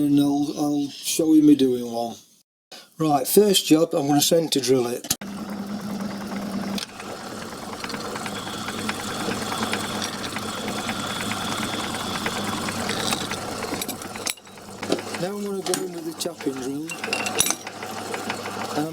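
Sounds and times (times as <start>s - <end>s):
lathe gear chatter: 5.2s - 18.9s.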